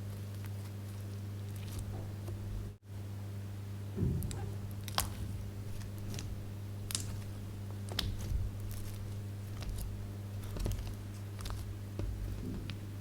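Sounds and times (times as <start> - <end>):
steady low hum: 0.0 - 13.0
slime clicking and popping: 4.8 - 5.2, 6.9 - 7.2, 7.9 - 9.0.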